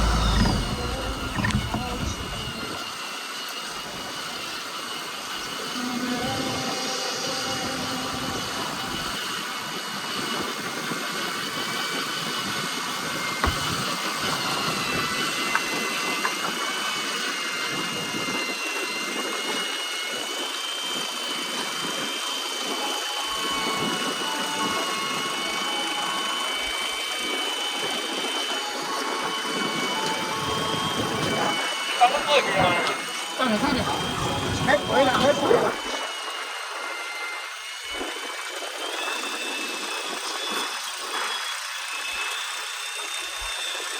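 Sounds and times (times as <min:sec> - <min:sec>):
boat engine running: 0:00.0 - 0:02.8, 0:13.4 - 0:15.7, 0:21.9 - 0:35.9
thin high whine: 0:00.0 - 0:10.8, 0:11.4 - 0:43.9.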